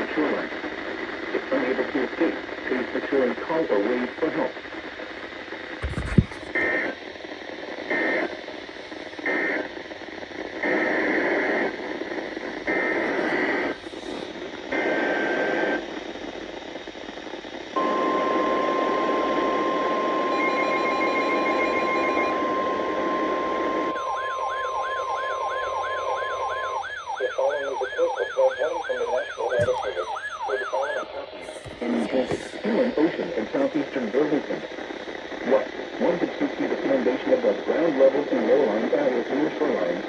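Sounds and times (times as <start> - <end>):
radio hiss: 0.0 - 24.0, 26.7 - 40.0
wavering siren-like tone: 17.8 - 31.1
steady warning alarm tone: 17.8 - 31.8.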